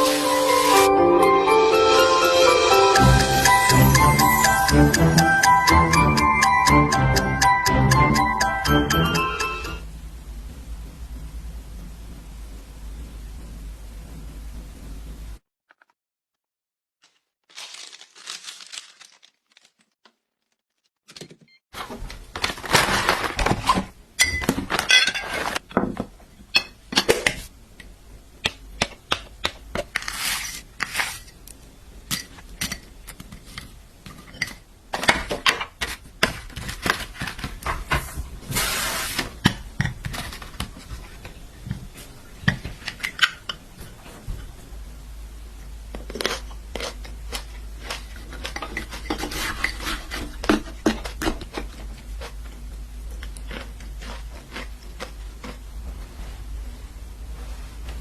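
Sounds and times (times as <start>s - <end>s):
low steady hum: 2.9s - 15.4s, 22.0s - 58.0s
scraping and rustling: 21.8s - 23.9s, 48.0s - 51.9s
dishes and utensils clinking: 24.2s - 25.6s.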